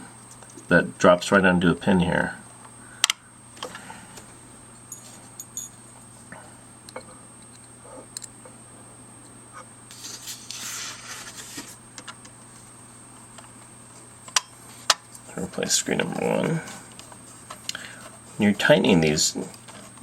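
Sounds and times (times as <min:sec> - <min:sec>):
steady background hum: 0:00.0 - 0:20.0
scraping rustle: 0:09.9 - 0:11.8, 0:13.9 - 0:20.0.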